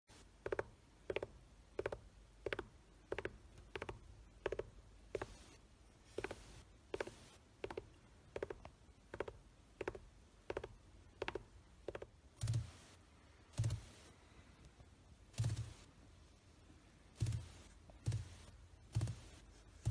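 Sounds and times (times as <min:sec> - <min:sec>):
gerbil drumming its feet: 0:00.3 - 0:12.9, 0:17.1 - 0:19.9.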